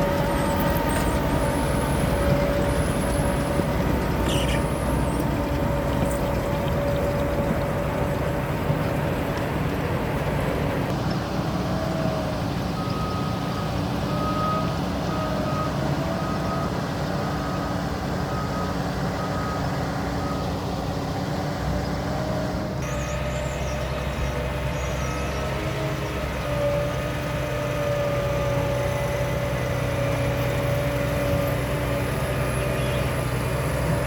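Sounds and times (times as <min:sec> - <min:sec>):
reversing alarm beeping: 0:00.0 - 0:08.6, 0:11.7 - 0:20.8, 0:22.8 - 0:27.0
diesel machinery running: 0:00.0 - 0:34.0.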